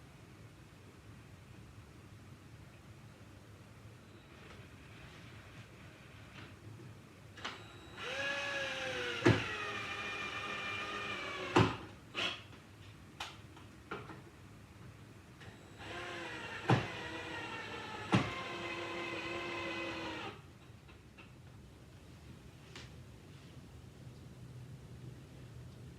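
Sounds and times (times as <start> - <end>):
power drill driving screws: 8.0 - 12.4, 15.7 - 20.4.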